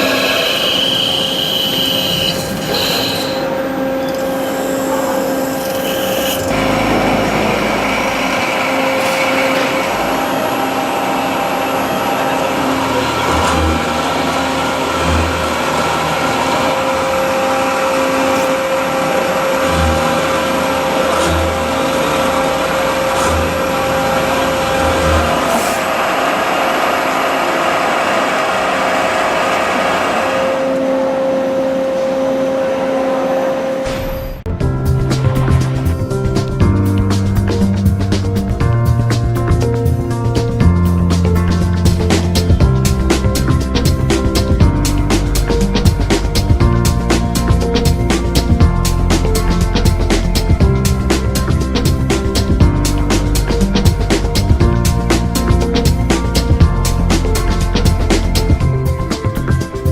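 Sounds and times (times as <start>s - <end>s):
machine tool running: 0.0s - 33.8s
short low pulses: 6.5s - 17.2s.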